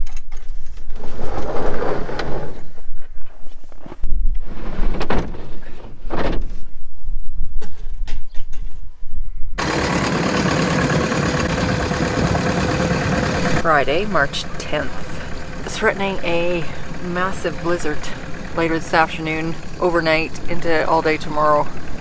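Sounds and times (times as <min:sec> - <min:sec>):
tractor engine running: 0:09.6 - 0:22.0.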